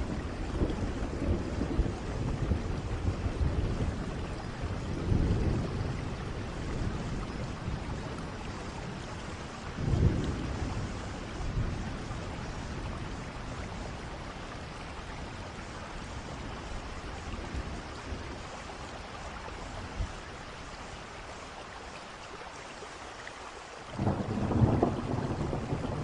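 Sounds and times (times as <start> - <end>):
thunder rumbling: 0.0 - 14.3, 24.0 - 26.0
steady rain falling: 0.0 - 26.0.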